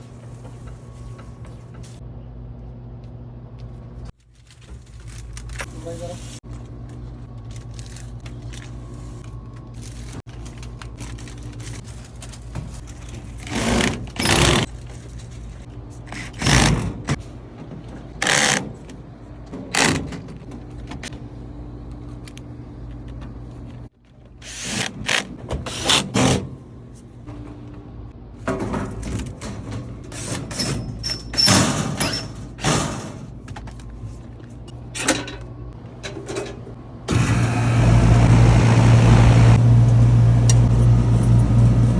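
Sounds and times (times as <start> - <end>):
hard parts knocking and clattering: 34.8 - 36.8.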